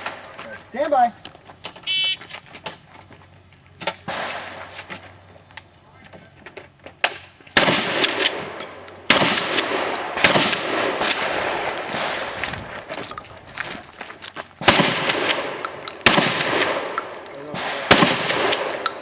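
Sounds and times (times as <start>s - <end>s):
shotgun shots echoing: 4.0s - 4.7s, 7.6s - 12.5s, 14.6s - 19.0s.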